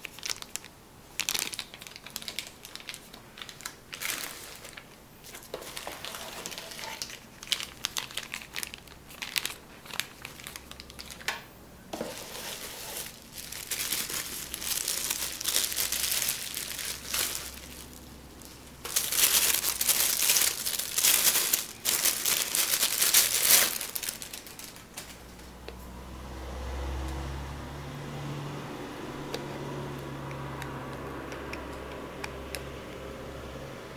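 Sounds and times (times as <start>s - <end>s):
packaging crinkling and rustling: 0.0s - 25.6s.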